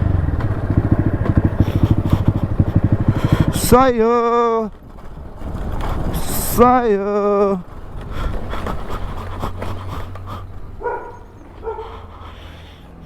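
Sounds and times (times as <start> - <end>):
steady low hum: 0.0 - 13.0
dog whining: 9.9 - 12.2.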